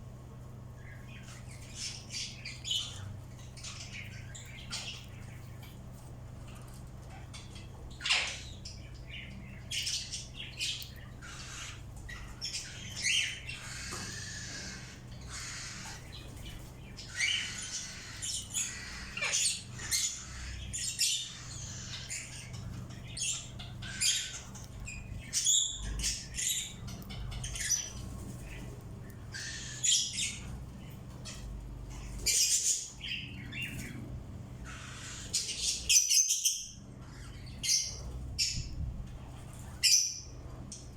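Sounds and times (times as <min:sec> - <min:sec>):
faint low hum: 0:00.0 - 0:40.9
birds squawking and chirping: 0:00.3 - 0:40.9.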